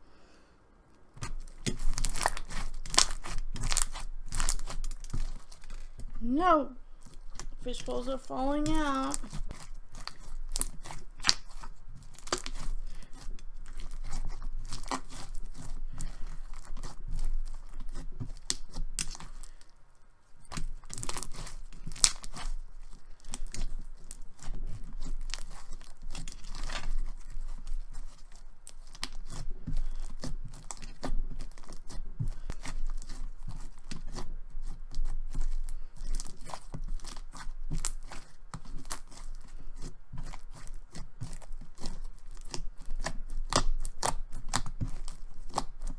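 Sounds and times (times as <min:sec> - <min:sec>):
slime beads crackling and popping: 0:01.1 - 0:19.7, 0:20.4 - 0:45.9.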